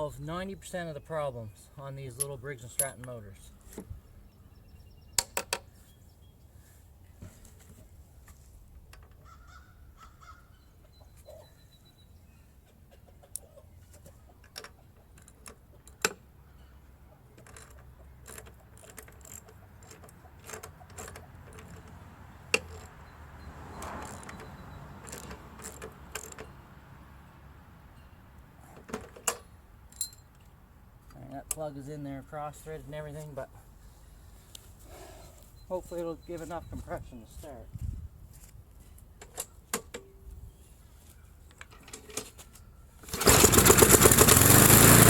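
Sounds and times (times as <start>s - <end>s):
metal hand tools clinking: 29.9s - 30.4s.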